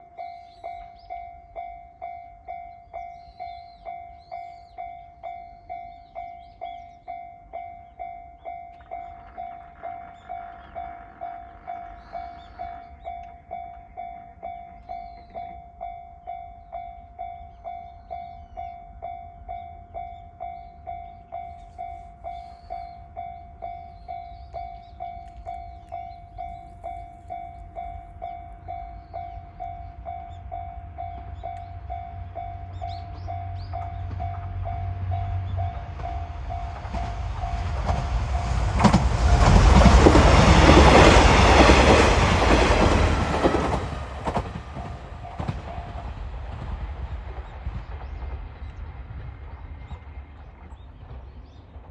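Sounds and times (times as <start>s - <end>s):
level crossing warning bell: 0.0s - 46.0s.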